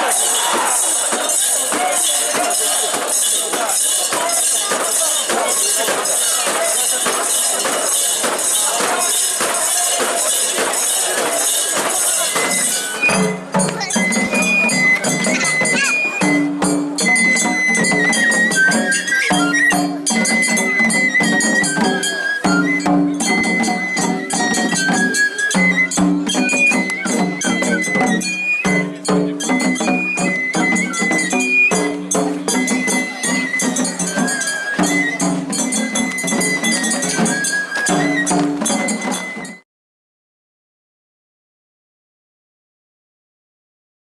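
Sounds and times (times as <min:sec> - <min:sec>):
steady percussion: 0:00.0 - 0:39.6
high flute melody: 0:08.6 - 0:39.6.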